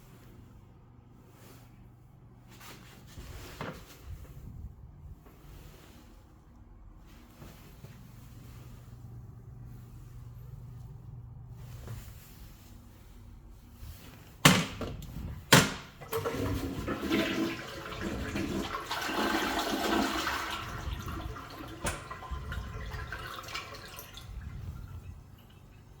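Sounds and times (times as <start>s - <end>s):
toilet flush water rushing: 16.0s - 24.3s.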